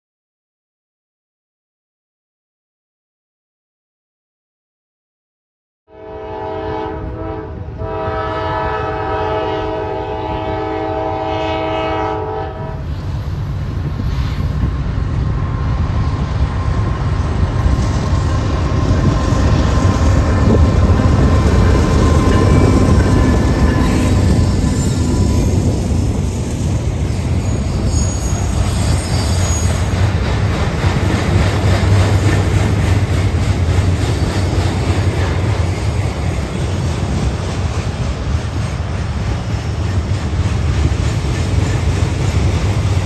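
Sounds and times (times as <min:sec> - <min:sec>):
locomotive air horn: 0:05.9 - 0:13.0
train rumbling by: 0:06.0 - 0:43.0
faint high wheel squeal: 0:22.0 - 0:25.8, 0:27.0 - 0:30.0.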